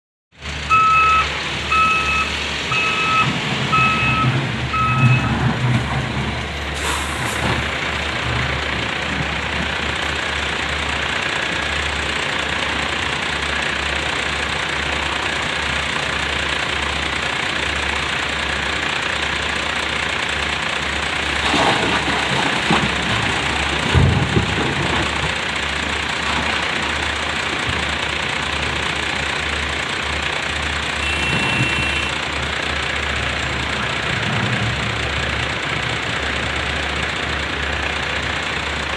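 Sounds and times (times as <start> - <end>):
excavator diesel engine running: 0.4 - 38.9
reversing alarm beeping: 0.7 - 5.4, 31.0 - 32.2.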